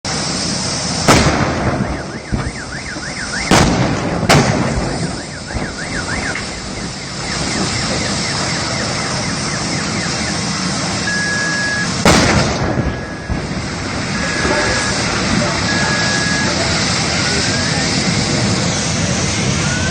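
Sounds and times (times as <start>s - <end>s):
fire rushing hiss: 0.0s - 19.9s
sharp bangs: 1.0s - 10.9s, 11.8s - 16.0s
steady beep: 1.7s - 3.5s, 4.8s - 12.0s, 12.9s - 13.5s, 14.1s - 18.0s, 19.6s - 19.9s
car alarm warbling: 1.7s - 3.6s, 4.8s - 12.0s, 12.9s - 13.5s, 14.1s - 18.0s.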